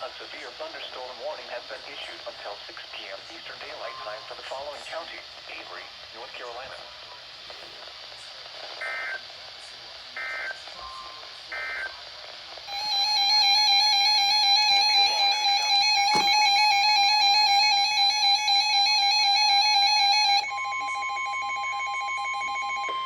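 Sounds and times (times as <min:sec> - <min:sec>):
data tone burst: 0:12.7 - 0:23.0
steady single-pitch alarm tone: 0:12.7 - 0:23.0
warbling electronic alarm: 0:12.7 - 0:23.0.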